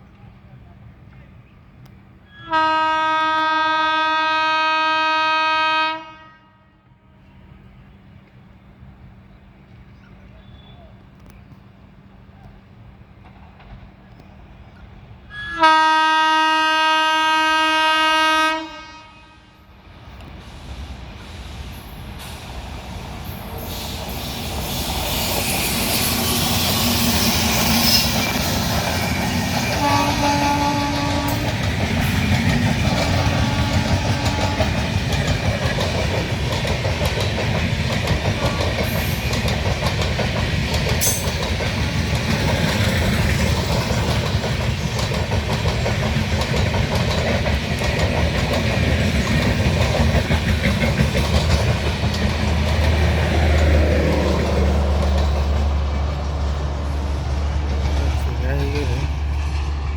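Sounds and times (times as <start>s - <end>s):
locomotive horn blasts: 2.4s - 6.9s, 15.3s - 19.8s, 29.8s - 31.5s, 33.2s - 34.8s
train wheels clattering on rails: 12.4s - 14.6s, 20.1s - 59.9s.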